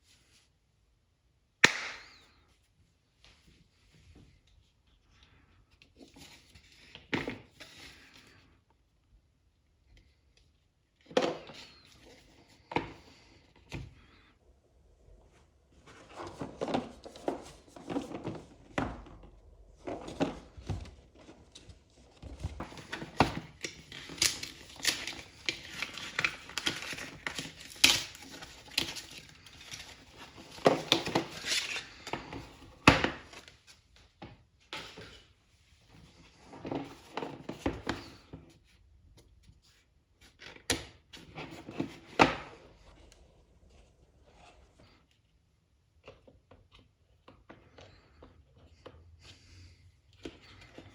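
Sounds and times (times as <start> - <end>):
packaging rustling and tearing: 22.7 - 32.1.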